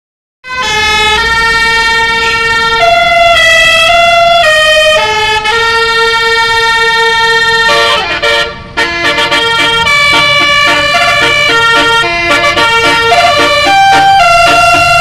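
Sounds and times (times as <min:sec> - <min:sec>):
musical air horn playing tune: 0:04.4 - 0:15.0.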